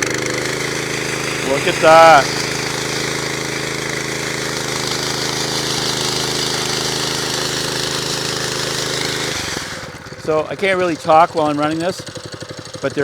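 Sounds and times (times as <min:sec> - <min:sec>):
power trowel petrol engine running: 0:00.0 - 0:13.0.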